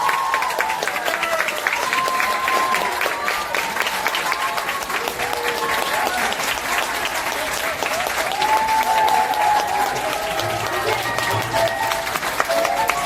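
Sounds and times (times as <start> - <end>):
audience applauding: 0.0 - 13.0
voices: 8.9 - 13.0.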